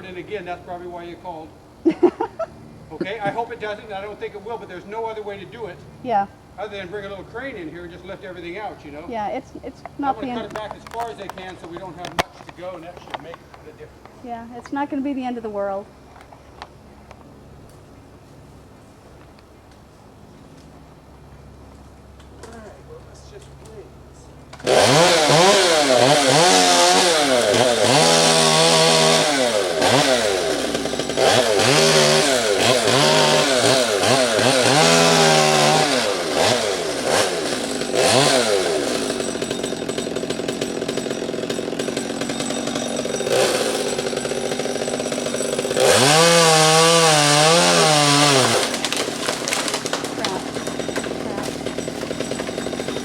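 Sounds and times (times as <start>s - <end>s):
chainsaw revving: 1.9s - 13.2s, 24.4s - 53.0s.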